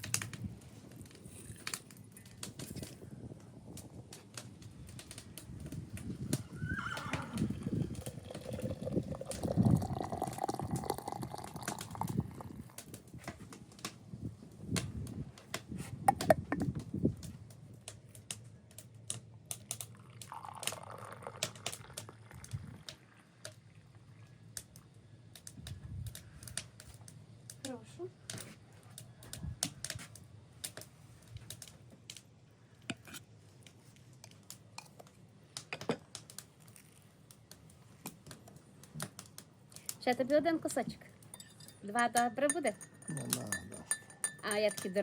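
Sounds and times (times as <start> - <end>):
tea pouring into cup: 7.3 - 12.9, 19.8 - 24.3
crockery and cutlery clinking: 41.2 - 45.0.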